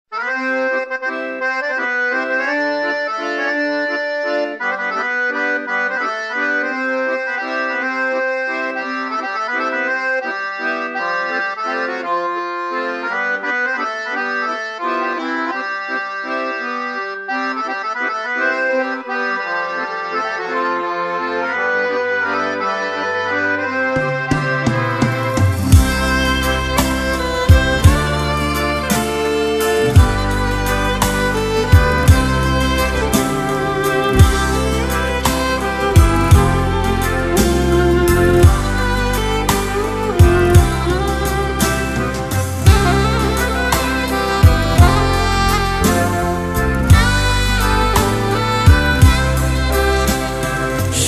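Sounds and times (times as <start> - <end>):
accordion melody with chords: 0.0 - 51.0
low bass notes: 21.6 - 51.0.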